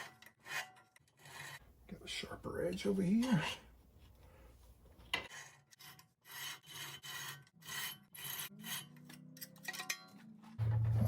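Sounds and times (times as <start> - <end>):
screwdriver scraping rust off metal: 0.0 - 1.6, 5.1 - 10.3.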